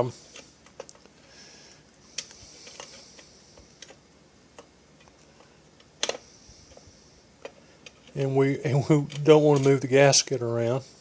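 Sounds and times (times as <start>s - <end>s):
clicks and taps of small parts: 5.8s - 6.8s.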